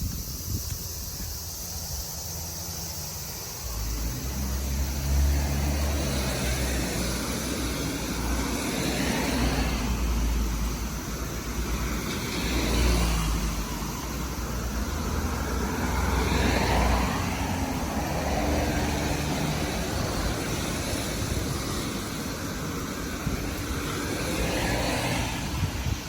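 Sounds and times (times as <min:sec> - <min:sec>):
strong wind buffeting microphone: 0:00.0 - 0:02.4, 0:15.8 - 0:26.0
road traffic passing: 0:00.0 - 0:26.0.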